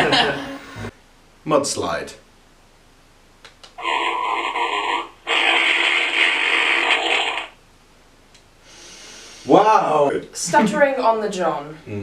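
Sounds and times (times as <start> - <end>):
fart sound effect: 3.8 - 7.6.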